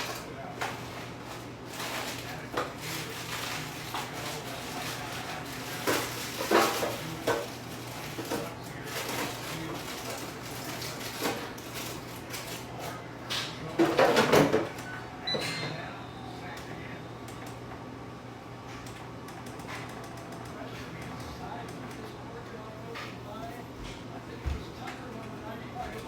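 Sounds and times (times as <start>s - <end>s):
drawers cupboards and dishes clattering: 0.0s - 15.8s.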